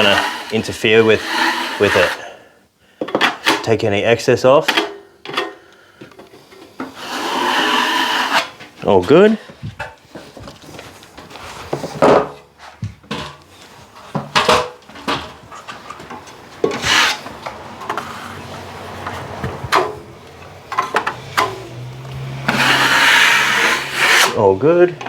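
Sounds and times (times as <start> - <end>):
drywall blade scraping compound: 0.0 - 2.5, 6.3 - 9.1, 16.5 - 25.0.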